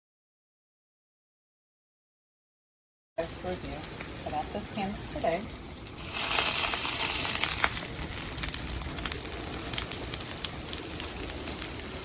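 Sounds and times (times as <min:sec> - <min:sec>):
food sizzling in a pan: 0:03.2 - 0:12.0.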